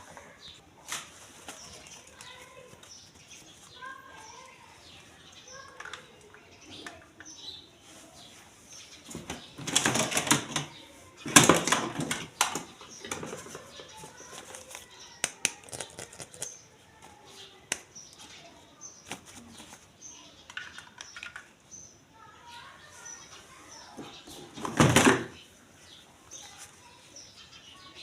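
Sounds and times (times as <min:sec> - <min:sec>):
plastic clicks and taps: 0:05.8 - 0:07.3, 0:20.4 - 0:21.5.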